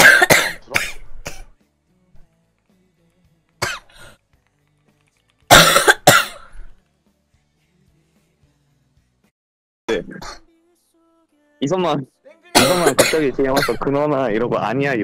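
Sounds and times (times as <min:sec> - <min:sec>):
girl coughing: 0:00.0 - 0:01.5, 0:05.5 - 0:06.5, 0:12.6 - 0:13.8.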